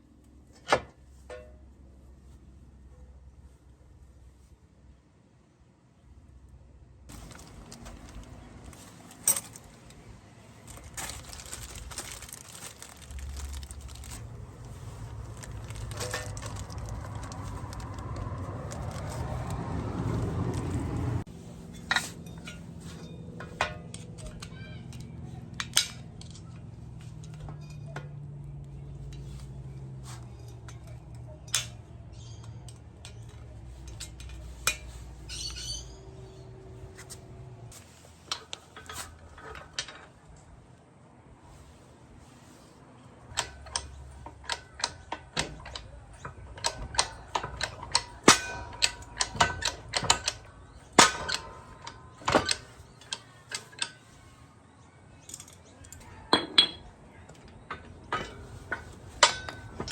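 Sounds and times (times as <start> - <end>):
metal tools clinking: 7.1 - 28.3, 29.0 - 36.0, 43.3 - 54.2, 55.2 - 59.9.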